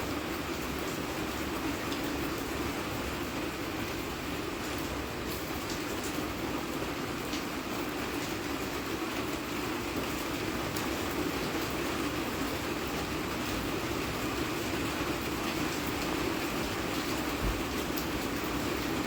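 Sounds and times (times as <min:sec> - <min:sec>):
steady rain falling: 0:00.0 - 0:19.0
raindrop ticks: 0:04.8 - 0:06.2.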